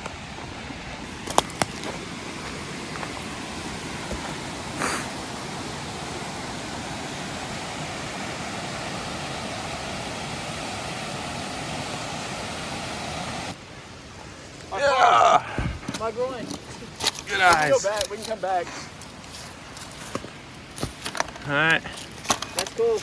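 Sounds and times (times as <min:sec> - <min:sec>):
waterfall rushing: 0:00.0 - 0:19.2.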